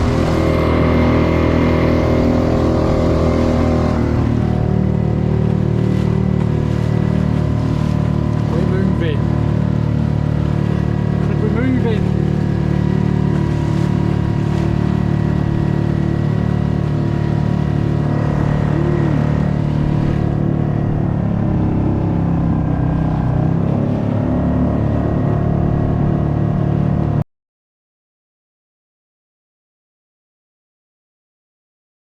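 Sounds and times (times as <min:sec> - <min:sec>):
outboard motor running: 0:00.0 - 0:27.2.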